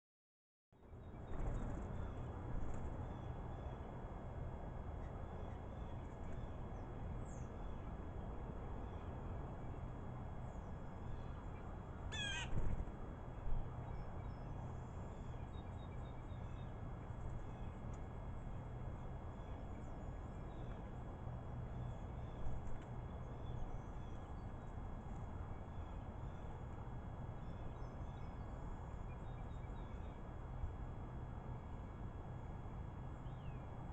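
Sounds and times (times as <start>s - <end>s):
low outdoor hum: 0.7s - 33.9s
blue jay harsh call: 12.1s - 12.6s.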